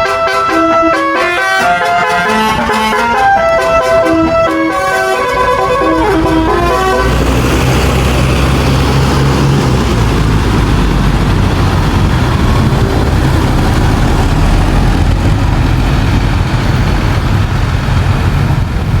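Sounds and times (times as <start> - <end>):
bus musical horn: 0.0 - 9.2
bus engine rumble: 0.0 - 19.0
road and wind noise: 0.0 - 19.0.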